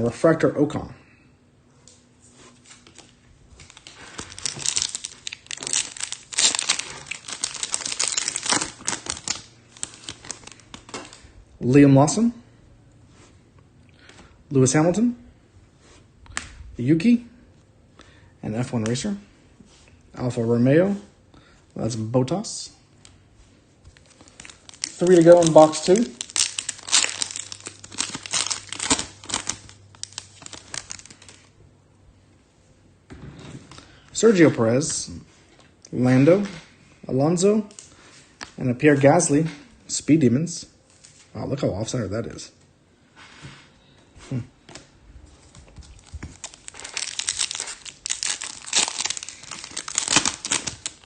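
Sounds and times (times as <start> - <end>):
wrapper tearing and crinkling: 2.7 - 11.2, 23.9 - 31.5, 45.8 - 51.0.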